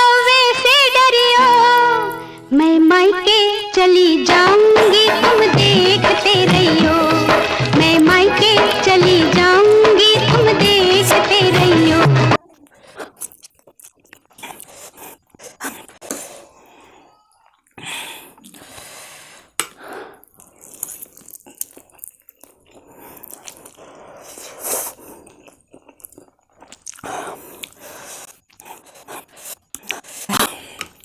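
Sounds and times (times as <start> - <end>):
person chewing noodles: 12.4 - 31.0.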